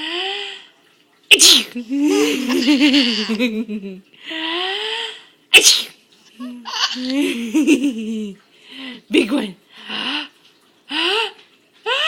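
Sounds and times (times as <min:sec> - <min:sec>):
woman sneezing: 0:01.3 - 0:01.8, 0:05.5 - 0:05.9.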